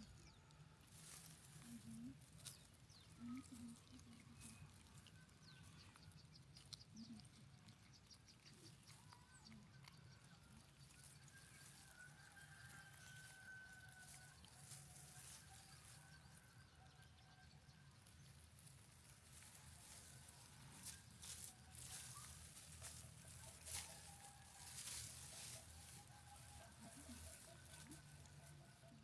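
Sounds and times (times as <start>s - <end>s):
light scratching: 18.1s - 29.0s
faint rustling: 18.6s - 28.9s.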